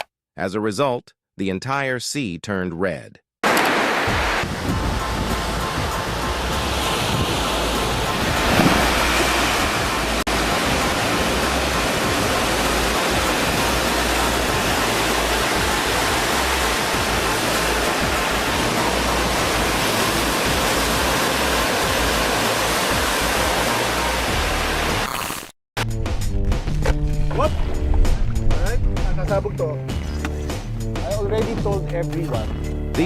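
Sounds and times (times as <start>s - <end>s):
loud rushing noise: 3.4s - 25.0s.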